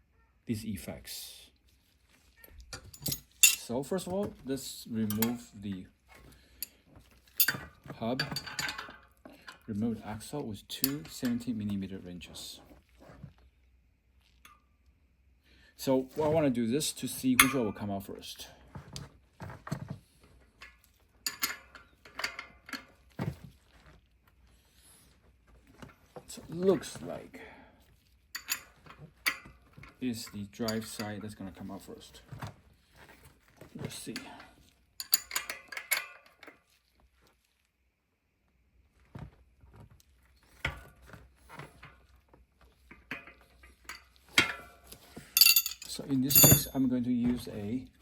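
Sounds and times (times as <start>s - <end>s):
wrenches clinking on bicycle axle: 2.7s - 3.8s, 5.0s - 5.5s, 6.6s - 9.7s, 20.6s - 22.9s, 28.4s - 31.3s, 35.0s - 36.6s, 43.0s - 46.8s.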